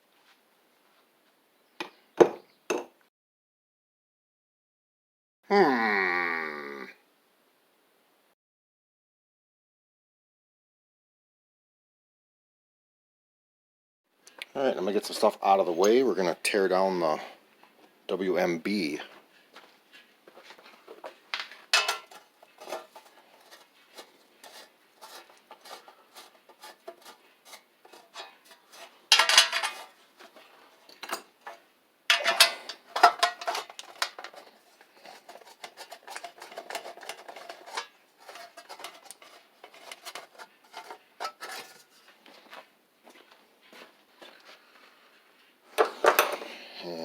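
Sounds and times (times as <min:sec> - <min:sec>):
metal tools clinking: 0:21.7 - 0:23.6, 0:27.9 - 0:42.1
metal parts rattling: 0:21.8 - 0:23.6, 0:27.9 - 0:30.4, 0:31.0 - 0:42.0.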